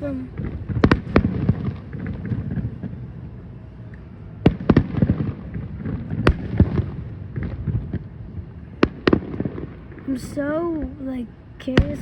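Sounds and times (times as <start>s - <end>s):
distant fireworks rumble and crackle: 0.0s - 12.0s.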